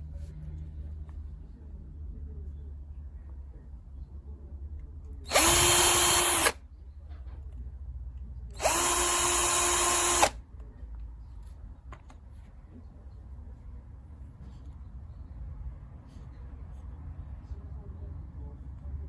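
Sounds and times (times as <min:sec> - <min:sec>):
cordless drill motor whining: 0:05.3 - 0:06.6, 0:08.6 - 0:10.4.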